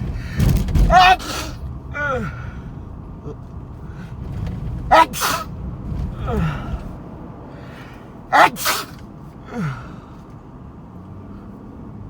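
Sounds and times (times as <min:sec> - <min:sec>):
person sneezing: 0:00.9 - 0:01.6, 0:04.9 - 0:05.5, 0:08.3 - 0:09.8.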